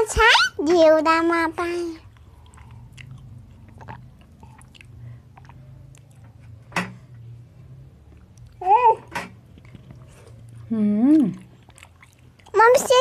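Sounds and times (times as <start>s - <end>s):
low steady hum: 0.0s - 13.0s
person chewing food: 2.0s - 6.6s, 8.0s - 8.6s, 9.4s - 12.9s.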